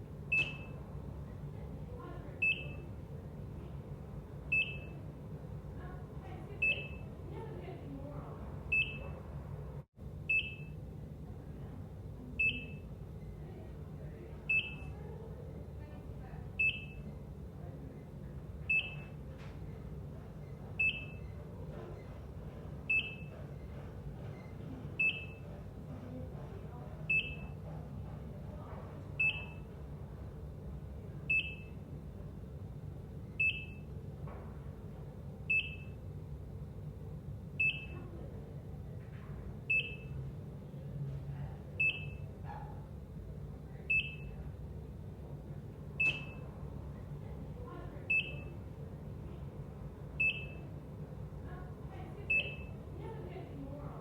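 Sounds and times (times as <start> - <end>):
low background hum: 0.0 - 54.0
heart monitor beeping: 0.3 - 0.8, 2.4 - 3.0, 4.5 - 5.1, 6.6 - 7.1, 8.7 - 9.2, 10.3 - 10.8, 12.4 - 12.9, 14.5 - 14.9, 16.6 - 17.2, 18.6 - 19.2, 20.5 - 22.2, 22.8 - 25.6, 27.1 - 27.7, 29.2 - 29.8, 31.3 - 31.9, 33.4 - 33.9, 35.5 - 36.0, 37.6 - 38.0, 39.7 - 40.2, 41.8 - 42.3, 43.9 - 44.4, 46.0 - 46.5, 48.1 - 48.6, 50.2 - 50.8, 52.3 - 52.8.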